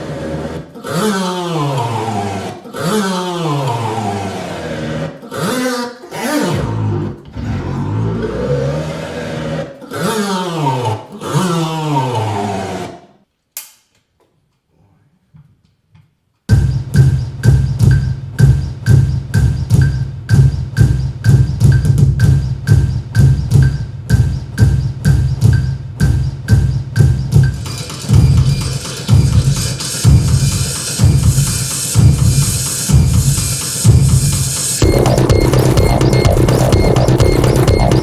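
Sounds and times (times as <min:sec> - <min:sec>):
deep sustained bass: 0:06.6 - 0:09.6, 0:34.8 - 0:38.0
music with percussive beat: 0:16.5 - 0:38.0.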